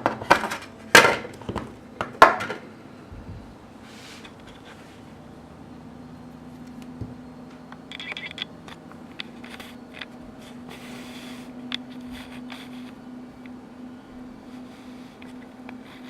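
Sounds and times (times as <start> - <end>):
steady low hum: 0.0 - 16.0
packaging rustles and scrapes: 9.3 - 13.0.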